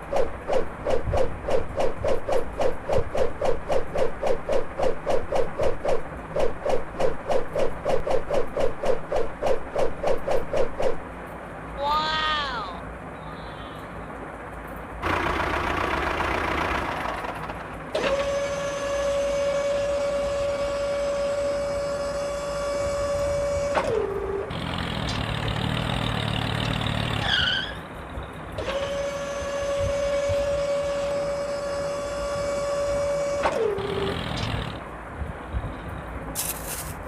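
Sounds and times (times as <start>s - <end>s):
small electric motor whining: 18.0s - 27.8s, 28.6s - 34.8s.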